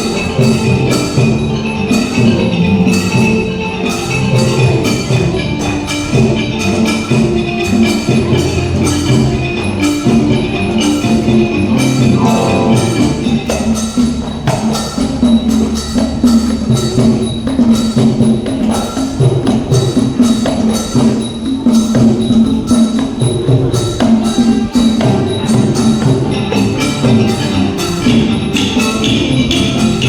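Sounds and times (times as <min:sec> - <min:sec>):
wind instrument melody: 0:00.0 - 0:14.0
pitched mallet percussion: 0:00.0 - 0:30.0
steady percussive beat: 0:00.0 - 0:30.0.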